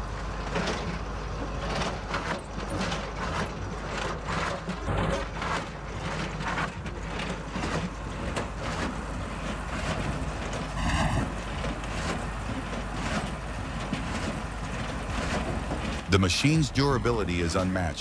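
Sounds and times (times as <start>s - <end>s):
heavy machine running: 0.0s - 18.0s
high-pitched squeal: 10.8s - 11.4s.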